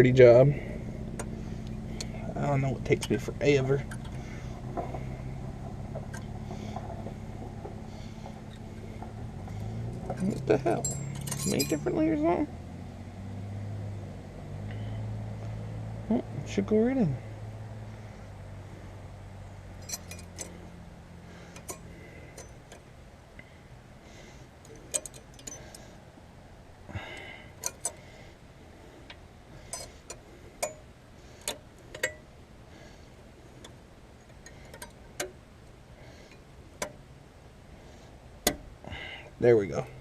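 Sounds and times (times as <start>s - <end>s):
small metallic clicks and clinks: 9.5s - 12.0s, 19.8s - 20.8s, 21.5s - 22.9s, 24.6s - 25.8s, 27.6s - 28.0s, 29.1s - 32.3s, 33.6s - 35.4s.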